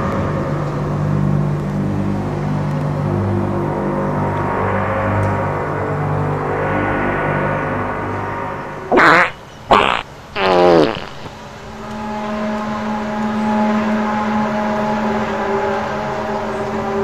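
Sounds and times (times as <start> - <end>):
loud horn-like blasts: 8.9 - 16.6.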